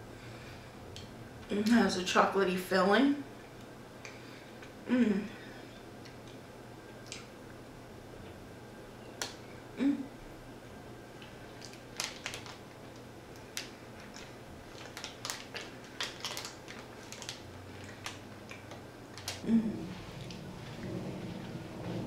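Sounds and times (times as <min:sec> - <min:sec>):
chewing with wet mouth clicks: 0:07.0 - 0:07.3, 0:11.2 - 0:19.4
short low hum: 0:19.4 - 0:22.0.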